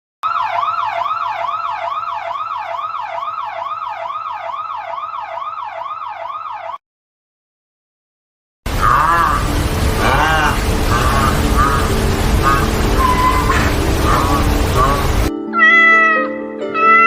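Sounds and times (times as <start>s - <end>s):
electronic siren wailing: 0.2s - 6.8s, 8.7s - 15.3s.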